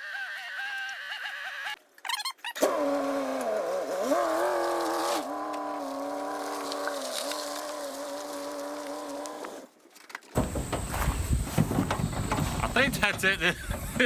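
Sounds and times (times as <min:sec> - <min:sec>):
truck engine starting and idling: 0:10.4 - 0:14.0.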